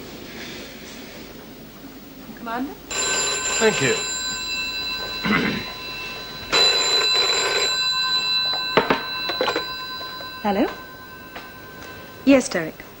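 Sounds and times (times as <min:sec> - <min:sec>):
telephone bell ringing: 0:02.9 - 0:13.0.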